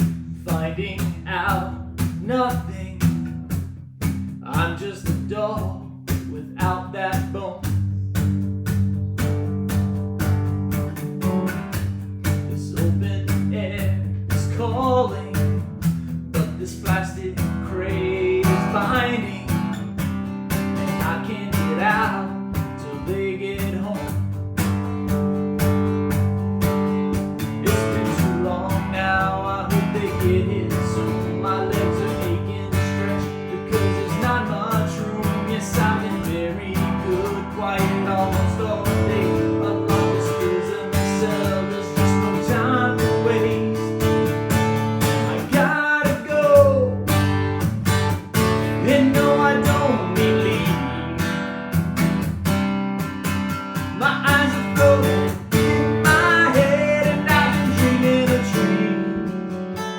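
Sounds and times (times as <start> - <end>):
acoustic guitar strumming: 0.0 - 59.9
sliding guitar melody: 24.3 - 59.9.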